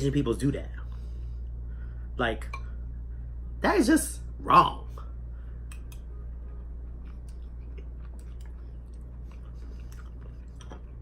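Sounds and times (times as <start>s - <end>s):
steady low hum: 0.0s - 11.0s
person chewing soup: 5.8s - 11.0s.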